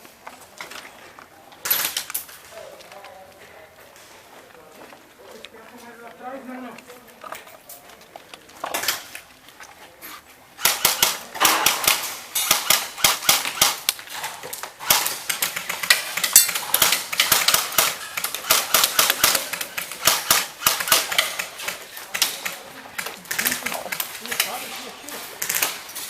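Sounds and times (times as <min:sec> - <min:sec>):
airsoft guns firing: 0:10.6 - 0:26.0.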